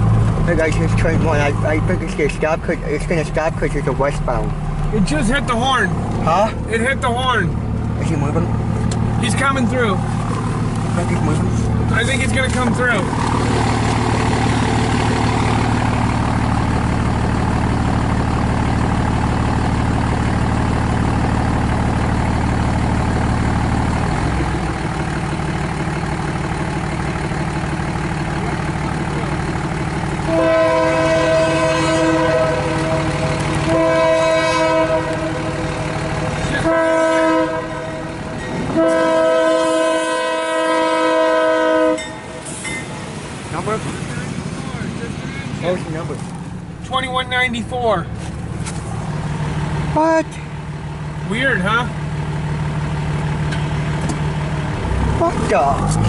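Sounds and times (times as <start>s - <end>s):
diesel locomotive engine: 0.0s - 56.0s
train air horn blasts: 30.2s - 42.8s.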